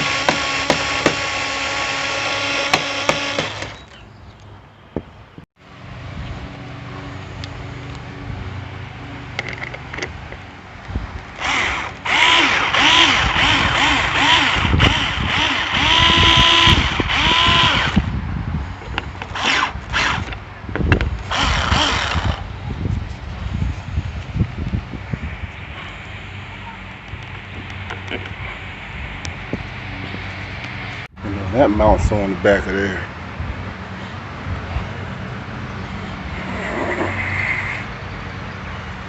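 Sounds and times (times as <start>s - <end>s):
power drill motor whine: 0.0s - 3.8s, 11.4s - 18.1s, 19.3s - 20.4s, 21.2s - 22.5s.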